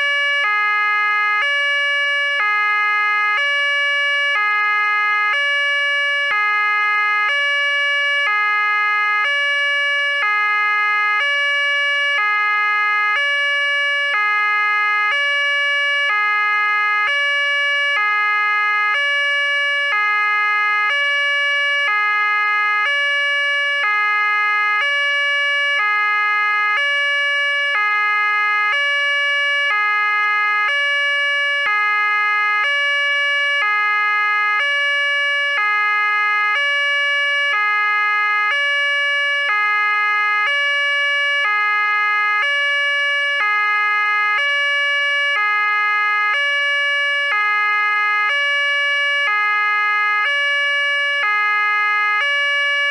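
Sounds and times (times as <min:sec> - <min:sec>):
two-tone police siren: 0:00.0 - 0:52.9.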